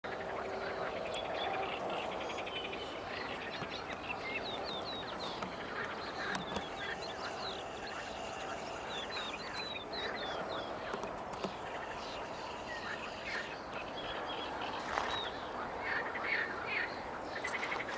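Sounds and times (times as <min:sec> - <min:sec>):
frog chorus: 0:00.1 - 0:17.9.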